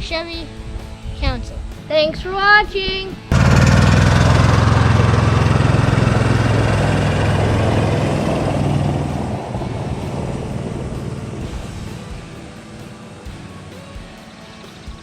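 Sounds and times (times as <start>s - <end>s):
engine running: 3.3s - 14.0s.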